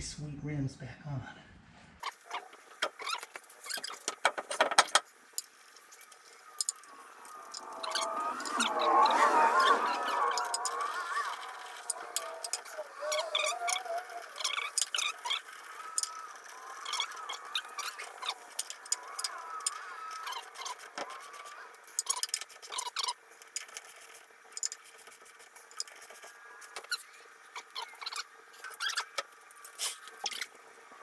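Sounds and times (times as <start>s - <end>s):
faint high chirps: 6.2s - 23.2s.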